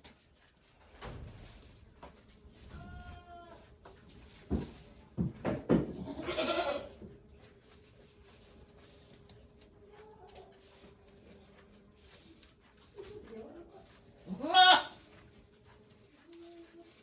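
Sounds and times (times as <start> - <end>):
goat bleating: 2.7 - 3.6, 6.0 - 7.0, 14.3 - 15.0.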